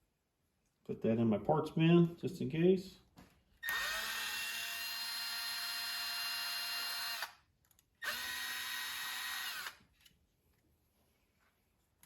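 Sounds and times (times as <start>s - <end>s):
electric drill whine: 3.6s - 7.4s, 8.0s - 9.8s.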